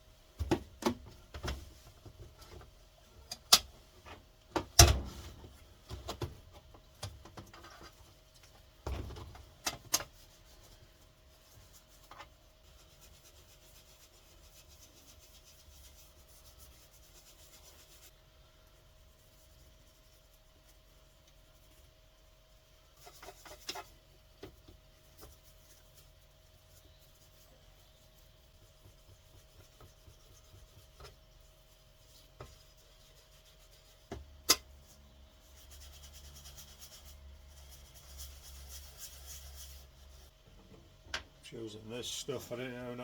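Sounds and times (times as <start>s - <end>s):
rubbing on a surface: 10.1s - 18.2s, 19.0s - 34.1s, 34.8s - 40.4s.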